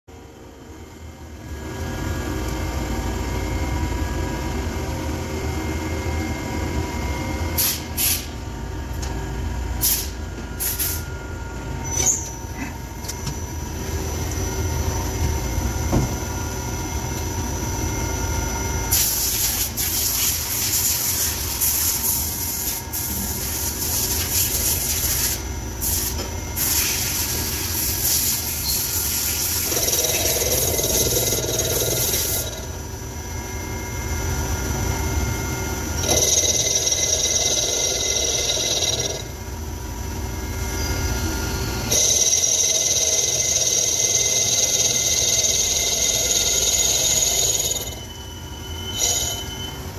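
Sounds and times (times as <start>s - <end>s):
lathe machine humming: 25.5s - 48.1s
sharp machine clicks: 29.4s - 32.6s, 36.0s - 39.2s, 41.9s - 47.9s.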